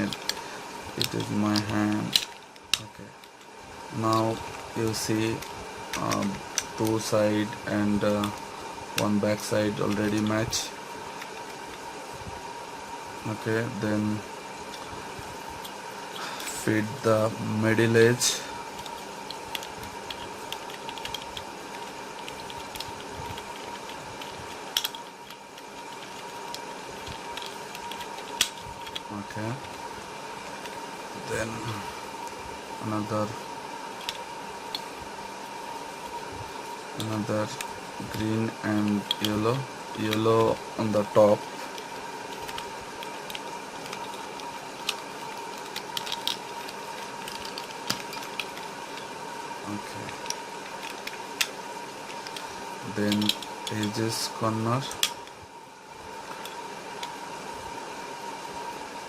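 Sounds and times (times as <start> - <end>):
faint hum: 0.0 - 59.0
plastic puzzle cube pieces clicking: 18.8 - 29.1, 41.8 - 49.1, 53.1 - 53.9.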